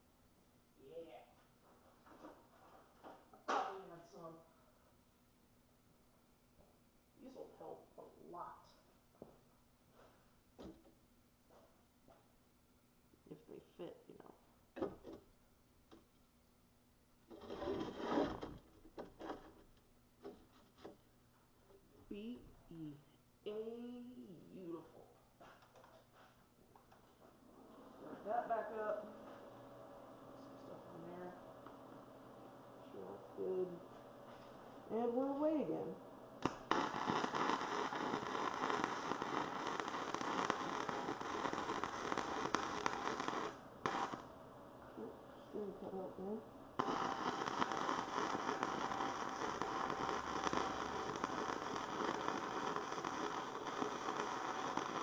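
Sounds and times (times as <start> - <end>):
arc welding sizzle: 36.4 - 44.3, 46.8 - 55.0.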